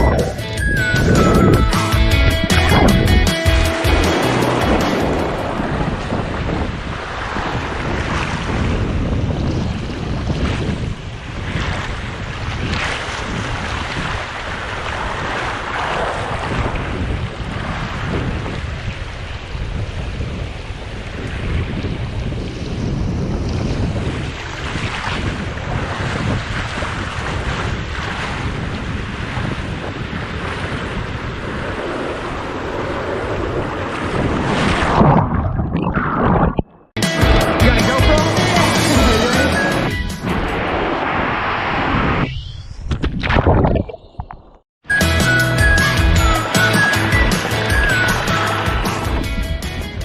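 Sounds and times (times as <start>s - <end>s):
water rushing: 0.0s - 8.6s, 31.7s - 41.7s, 44.9s - 49.7s
wind buffeting microphone: 0.0s - 37.6s, 45.3s - 50.0s
rushing splashing water: 1.2s - 22.7s, 23.4s - 35.8s, 45.2s - 49.5s.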